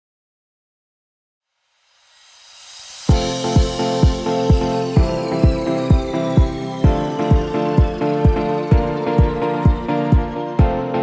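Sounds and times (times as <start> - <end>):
rising hiss: 1.7 - 9.2
electronic music with kick drum: 3.1 - 11.0.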